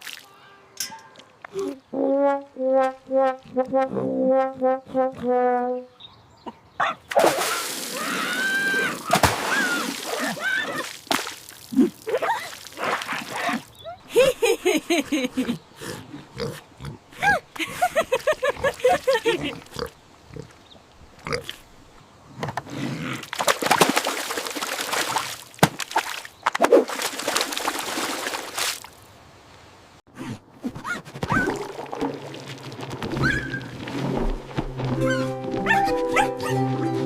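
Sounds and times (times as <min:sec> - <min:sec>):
pig squealing and grunting: 0:07.4 - 0:10.9.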